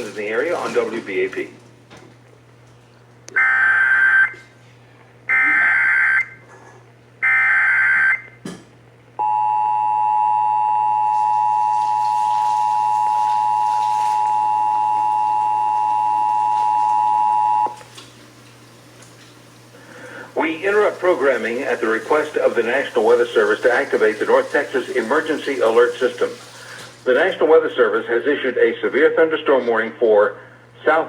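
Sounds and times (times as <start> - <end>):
two-tone attention signal: 9.2 - 17.8.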